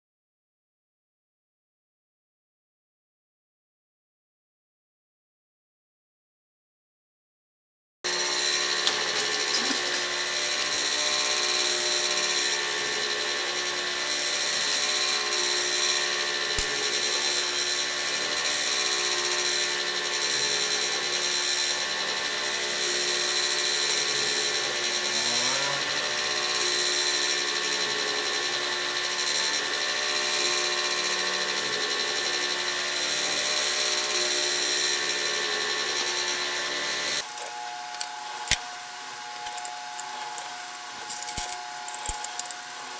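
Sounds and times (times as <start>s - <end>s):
three d printer motors whining: 8.1s - 42.9s.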